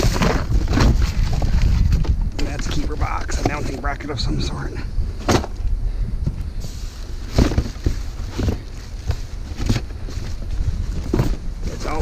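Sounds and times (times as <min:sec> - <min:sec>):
scrap items knocking and clattering: 0:00.0 - 0:03.8, 0:07.3 - 0:10.3
wind buffeting microphone: 0:00.0 - 0:12.0.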